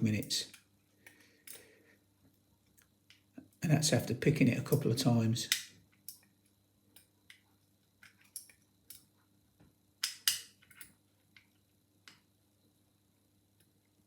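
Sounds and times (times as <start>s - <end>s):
lock pick metallic clicks: 5.5s - 6.3s, 8.0s - 9.1s, 10.0s - 11.0s.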